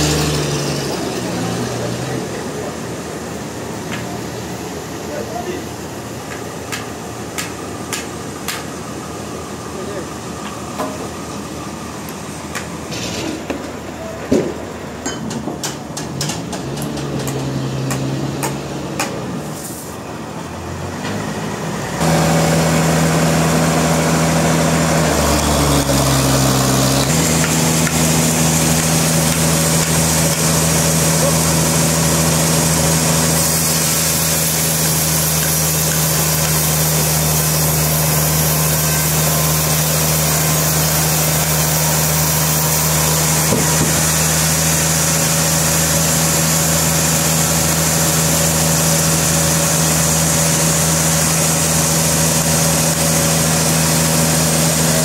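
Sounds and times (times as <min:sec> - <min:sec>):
sawmill engine droning: 0:00.0 - 0:55.0
sharp clicks and knocks: 0:06.3 - 0:08.7, 0:12.5 - 0:19.2.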